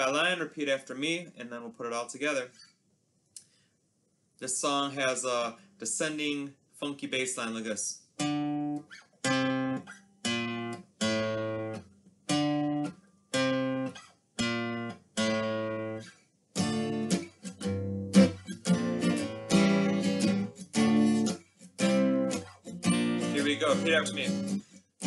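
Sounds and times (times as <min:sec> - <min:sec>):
strummed guitar chords: 0:08.2 - 0:24.7.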